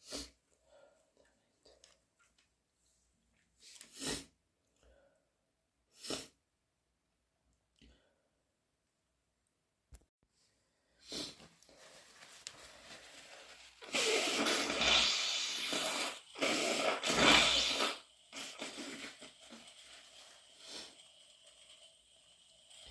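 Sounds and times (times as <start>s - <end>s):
woman blowing her nose: 0.0s - 0.4s, 3.6s - 4.4s, 5.9s - 6.4s, 11.0s - 11.5s, 13.0s - 19.6s, 20.6s - 21.0s.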